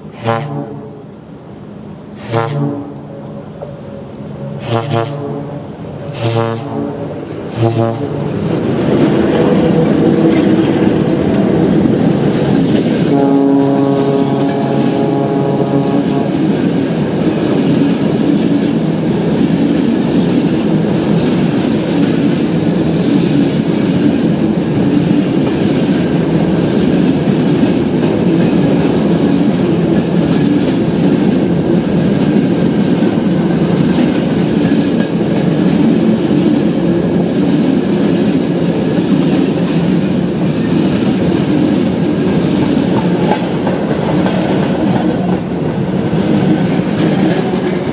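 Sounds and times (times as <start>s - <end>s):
train running on rails: 0.0s - 47.9s
locomotive horn blast: 0.1s - 1.0s, 2.2s - 3.4s, 4.3s - 8.4s, 13.1s - 16.6s
wheels clacking over rail joints: 7.0s - 47.9s.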